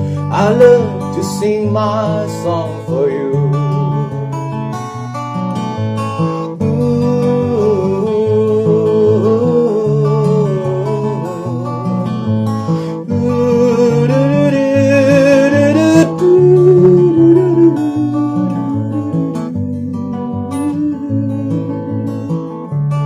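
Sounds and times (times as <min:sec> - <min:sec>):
acoustic guitar playing: 0:00.0 - 0:23.0.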